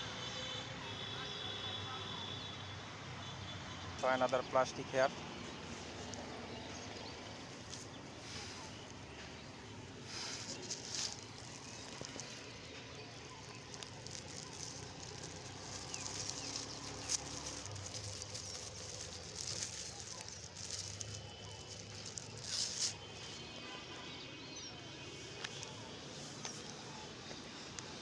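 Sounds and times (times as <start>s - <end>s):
plastic litter crackling: 5.3s - 23.5s, 25.3s - 26.8s.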